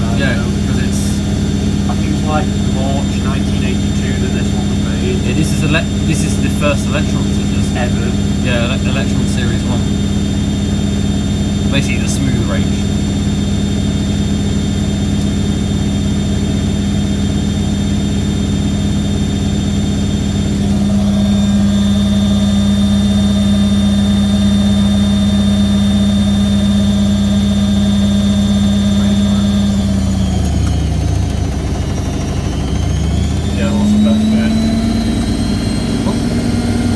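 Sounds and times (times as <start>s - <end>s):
washing machine spinning: 0.0s - 36.9s.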